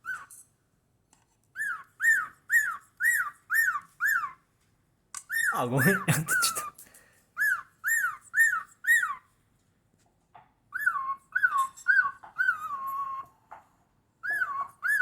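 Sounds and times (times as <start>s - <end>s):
cockatiel whistling: 1.6s - 4.4s, 5.2s - 6.7s, 7.4s - 9.2s, 10.7s - 13.4s, 14.2s - 15.0s.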